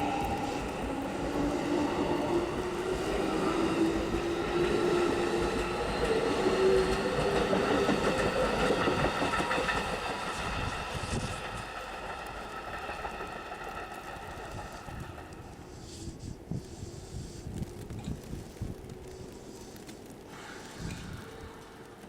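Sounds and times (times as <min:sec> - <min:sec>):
wheels clattering on rails: 0:00.0 - 0:15.7.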